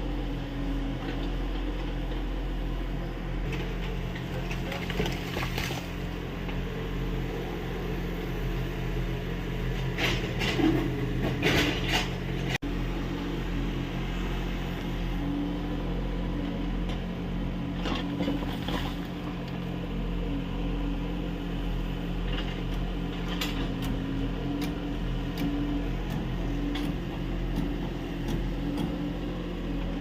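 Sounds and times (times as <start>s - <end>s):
excavator diesel engine running: 0.0s - 30.0s
bucket scraping and clanking: 4.3s - 6.0s, 9.9s - 12.5s, 17.8s - 19.2s.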